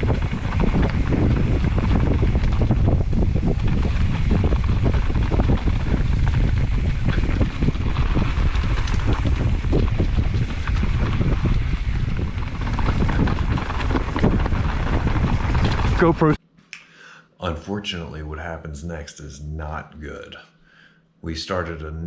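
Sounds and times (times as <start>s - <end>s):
bike clicking and rattling: 0.0s - 16.4s
bike tyres rumbling on trail: 0.0s - 16.4s
wind buffeting microphone: 0.0s - 16.4s.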